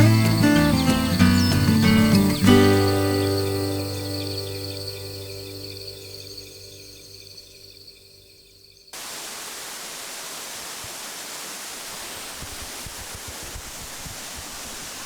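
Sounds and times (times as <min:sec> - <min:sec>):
rushing water: 0:09.0 - 0:15.0.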